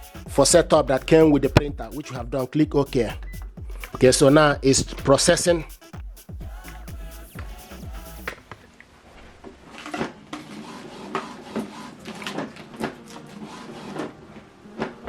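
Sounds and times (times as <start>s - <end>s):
printer mechanism clicks and clunks: 9.8s - 14.2s.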